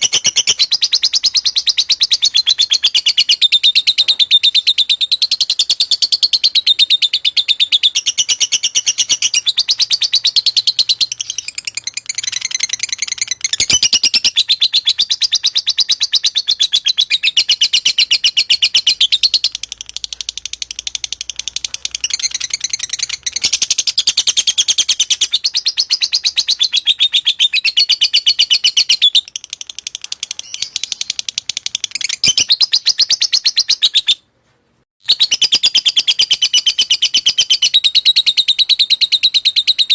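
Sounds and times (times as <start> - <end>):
bird rapid high chirps: 0.0 - 34.2, 35.0 - 39.9.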